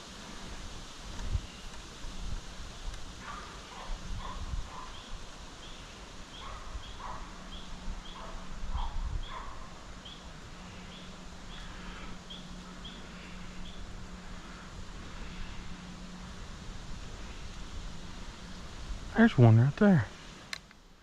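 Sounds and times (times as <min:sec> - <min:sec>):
bird chirping: 0:10.0 - 0:13.9.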